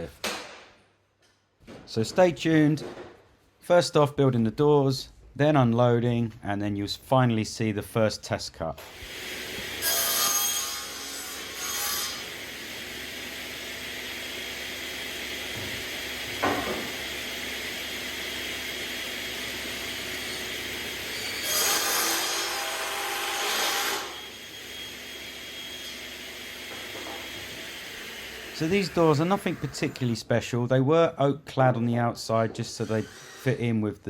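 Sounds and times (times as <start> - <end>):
power saw cutting wood: 8.8 - 30.3, 32.6 - 33.9.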